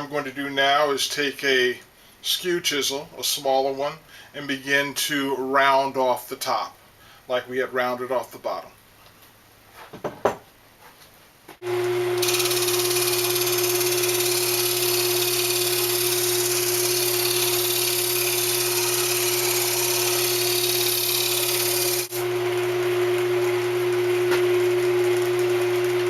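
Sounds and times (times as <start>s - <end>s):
wood lathe motor hum: 11.6s - 22.8s
chisel cutting spinning wood: 11.7s - 22.3s.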